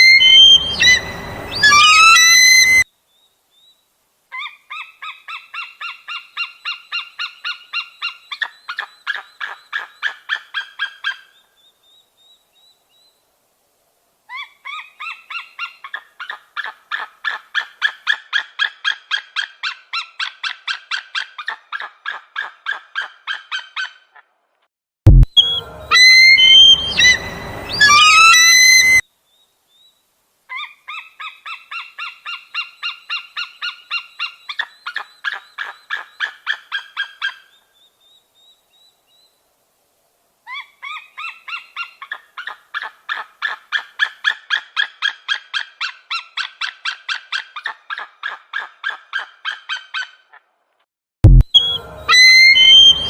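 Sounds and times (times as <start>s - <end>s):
eagle calling high piping notes: 0.0s - 2.9s, 25.1s - 29.0s, 51.3s - 53.0s
loud thump: 25.1s - 25.4s, 51.3s - 51.5s.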